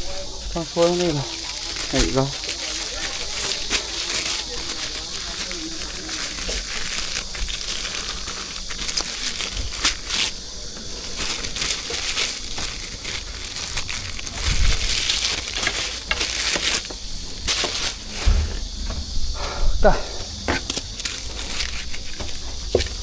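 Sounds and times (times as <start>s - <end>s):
packaging crinkling and rustling: 0.0s - 19.2s, 20.5s - 23.0s.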